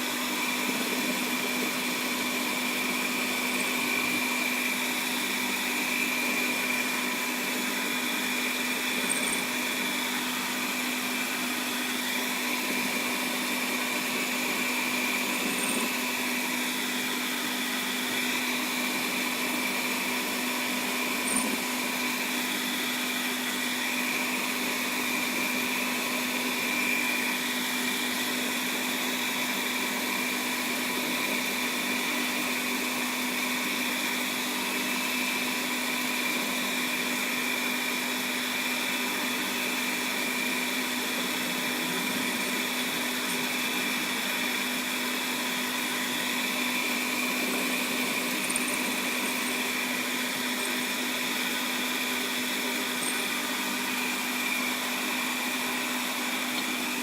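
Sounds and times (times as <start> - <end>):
metal lathe motor whine: 0.0 - 57.0.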